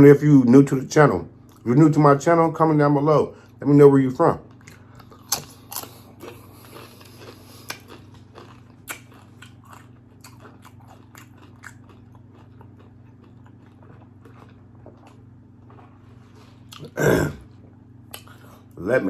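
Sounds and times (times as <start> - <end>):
person chewing crunchy food: 4.4 - 18.8.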